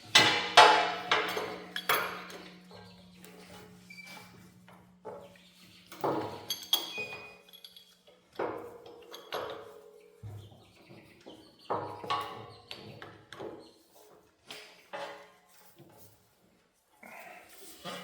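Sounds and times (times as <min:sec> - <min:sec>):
metal tools clinking: 0:01.1 - 0:02.4, 0:06.4 - 0:08.0.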